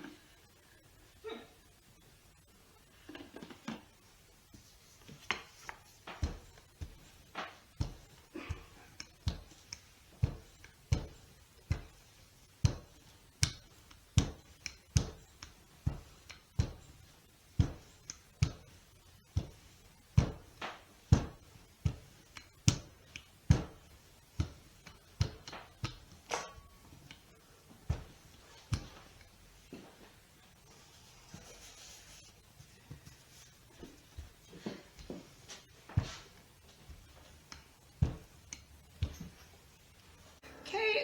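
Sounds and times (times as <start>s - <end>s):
rolling pin thudding on counter: 5.2s - 8.2s, 9.0s - 12.0s, 20.2s - 29.2s.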